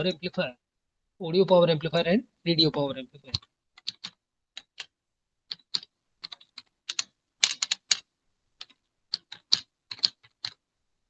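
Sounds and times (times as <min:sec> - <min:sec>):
computer keyboard typing: 0:03.3 - 0:04.9, 0:05.5 - 0:08.0, 0:08.6 - 0:10.6.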